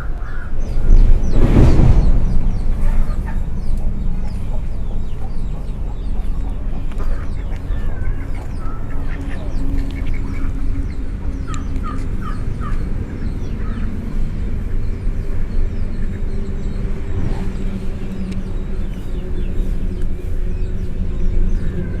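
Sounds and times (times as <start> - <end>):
birds calling: 0.0 - 22.0
steady low rumble: 0.0 - 22.0.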